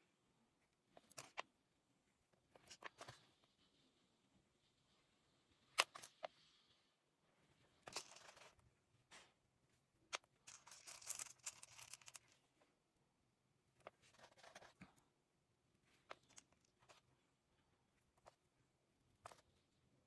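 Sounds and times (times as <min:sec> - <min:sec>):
beads and wire rattling: 0:07.9 - 0:08.5, 0:10.5 - 0:12.4.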